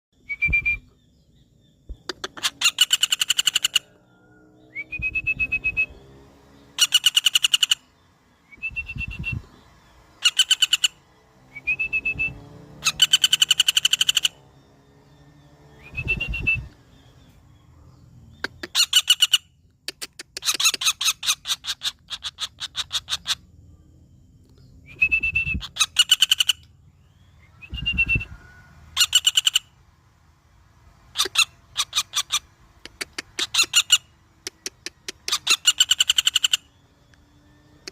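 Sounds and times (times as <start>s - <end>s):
short rising whistle: 0.2s - 0.9s, 4.7s - 6.0s, 11.5s - 12.5s, 15.8s - 16.8s, 24.8s - 25.7s, 27.5s - 28.6s
woodpecker rattling calls: 1.3s - 5.3s, 6.6s - 11.3s, 12.8s - 15.4s, 16.4s - 23.6s, 25.6s - 29.9s, 31.0s - 37.9s.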